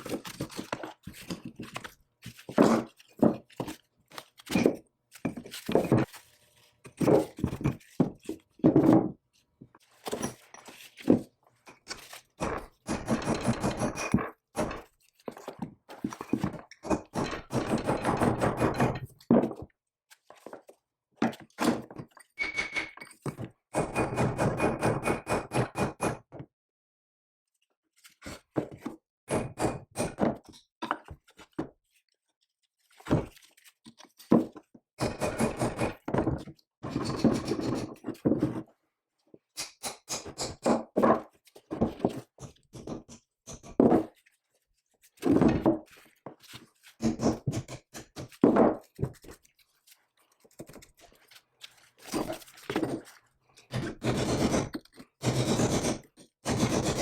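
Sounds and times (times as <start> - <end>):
metal parts clunking and scraping: 9.9 - 19.6, 34.2 - 38.7.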